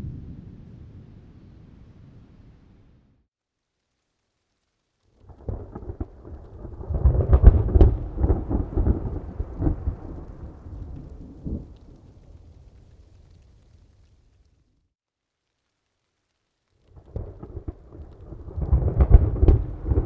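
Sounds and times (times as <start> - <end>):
thunderclap: 0.0 - 3.0, 5.2 - 14.1, 16.9 - 20.0.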